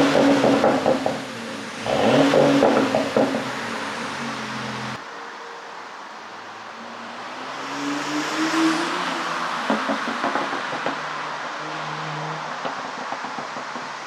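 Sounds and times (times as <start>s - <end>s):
car engine revving: 0.0s - 5.0s, 6.8s - 14.0s
exhaust pops and crackles: 0.0s - 5.0s, 9.6s - 14.0s.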